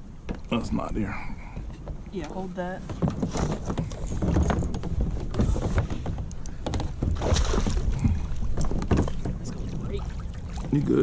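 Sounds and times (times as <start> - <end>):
knocks against kayak hull: 1.6 - 9.6.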